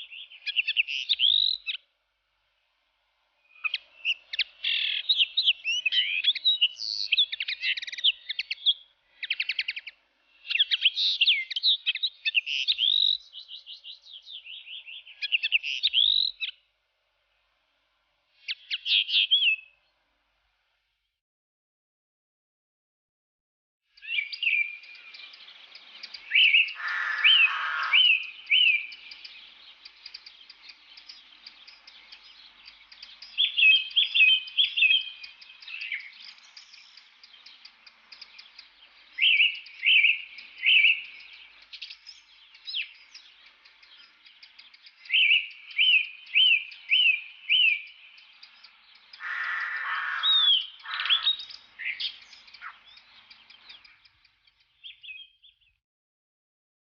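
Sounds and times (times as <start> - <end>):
faint background chirping: 0.0 - 21.2, 23.9 - 55.8
harsh low bird chatter: 24.0 - 55.7.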